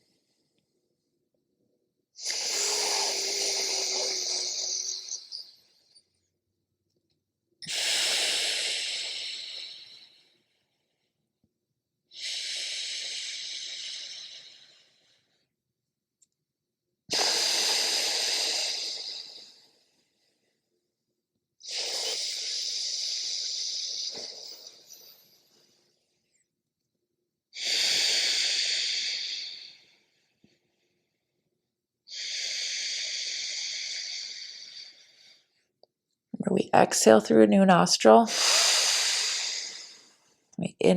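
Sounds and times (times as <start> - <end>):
slow breaths through the nose: 2.2 - 4.9, 7.6 - 10.4, 12.1 - 15.4, 17.1 - 20.3, 27.6 - 30.2, 32.1 - 35.6, 38.3 - 40.4.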